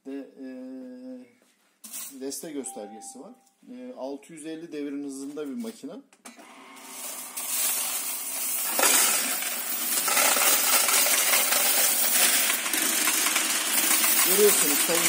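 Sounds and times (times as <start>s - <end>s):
coin counting machine motor: 6.8s - 15.0s
rattle of coins: 6.9s - 15.0s.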